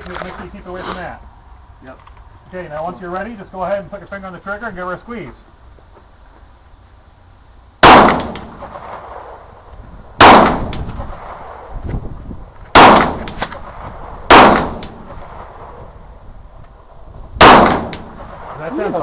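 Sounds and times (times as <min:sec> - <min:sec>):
loud gunshots: 0:07.8 - 0:09.3, 0:10.2 - 0:11.3, 0:12.7 - 0:13.5, 0:14.2 - 0:15.4, 0:17.4 - 0:19.0.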